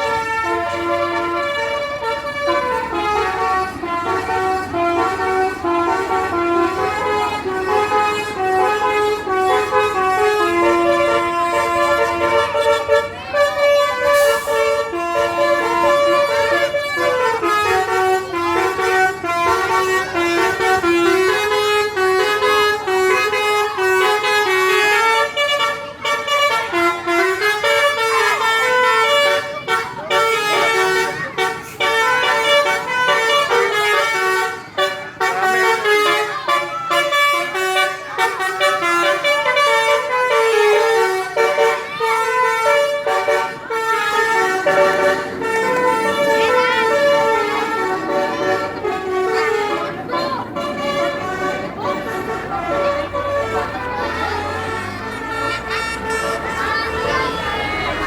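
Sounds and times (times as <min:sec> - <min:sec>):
multi-tone bus horns playing tune: 0:00.0 - 0:58.0.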